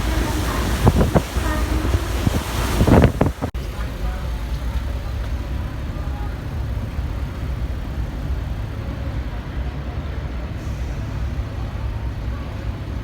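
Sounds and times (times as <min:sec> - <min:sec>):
wind buffeting microphone: 0:00.0 - 0:08.8
faint voices: 0:00.0 - 0:13.0
ferry engine low rumble: 0:00.0 - 0:13.0.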